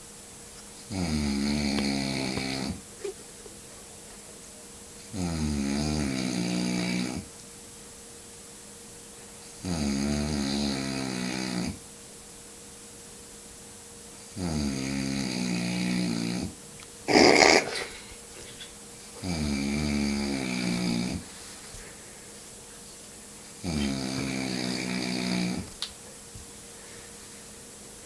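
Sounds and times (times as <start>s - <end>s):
man snoring: 0.9s - 2.8s, 5.1s - 7.3s, 9.6s - 11.8s, 14.3s - 17.9s, 19.2s - 21.3s, 23.6s - 25.7s.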